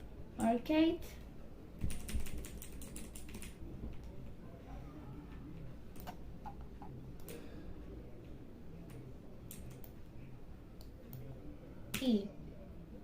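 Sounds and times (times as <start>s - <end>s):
mechanical keyboard typing: 1.8s - 3.6s.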